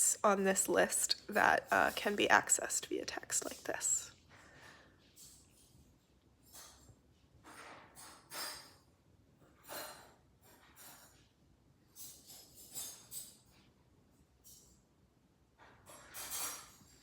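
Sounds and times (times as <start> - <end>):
soft breaths close to microphone: 1.7 - 5.9.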